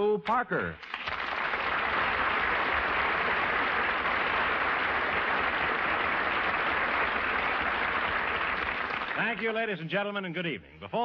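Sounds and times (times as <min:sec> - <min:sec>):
audience applauding: 0:00.8 - 0:09.7.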